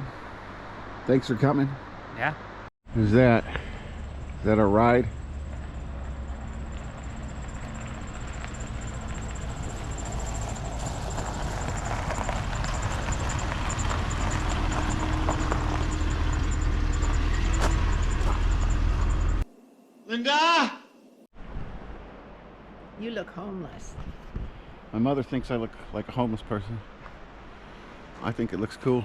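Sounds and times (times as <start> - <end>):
car approaching: 0.0 - 19.4.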